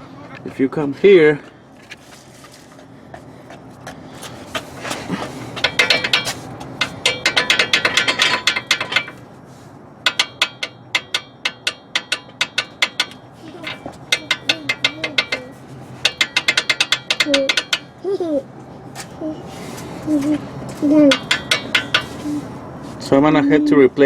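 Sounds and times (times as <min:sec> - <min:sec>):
sway bar link clicking: 0:10.1 - 0:17.9.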